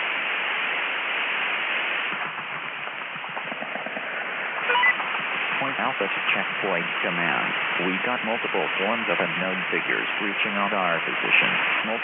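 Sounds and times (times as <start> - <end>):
two-way radio static hiss: 0.0 - 12.0
choppy voice fragments: 5.6 - 12.0.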